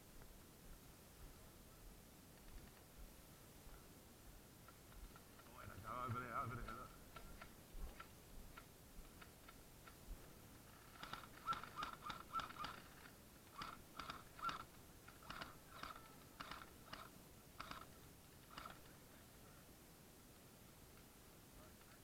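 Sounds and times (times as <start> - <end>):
faint airsoft gunfire: 10.9 - 17.9.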